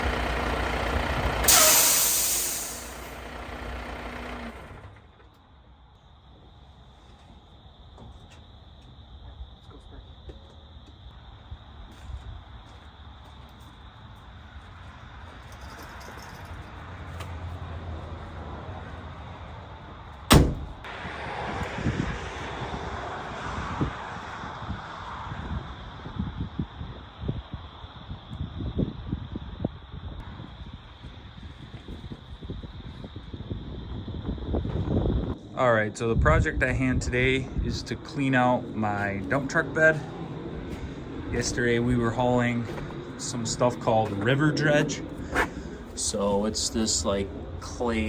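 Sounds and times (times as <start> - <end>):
diesel engine idling: 0.0 - 5.2, 36.8 - 48.0
air brake hiss: 1.4 - 3.2
sharp bang: 20.3 - 20.8.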